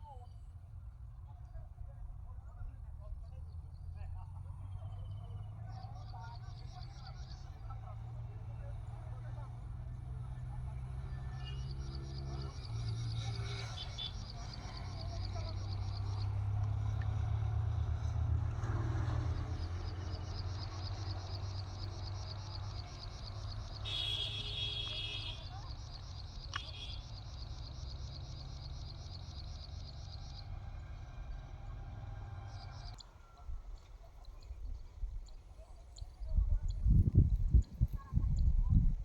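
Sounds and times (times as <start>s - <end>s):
insect chirping: 10.7s - 33.1s.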